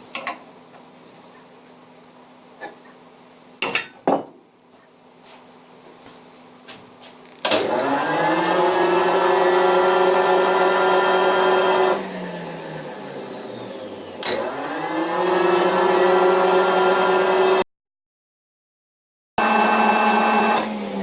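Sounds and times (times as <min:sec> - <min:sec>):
workshop machine motor whine: 0:07.4 - 0:17.6, 0:19.4 - 0:21.0.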